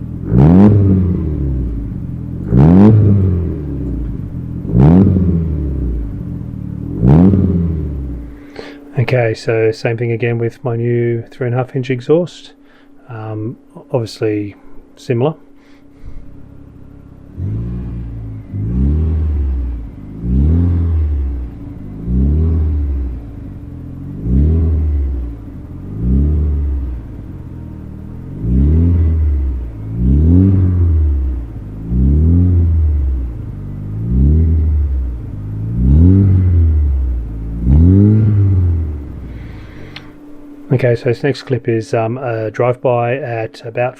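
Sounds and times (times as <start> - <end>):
car engine idling and revving: 0.0 - 9.3, 15.9 - 41.6.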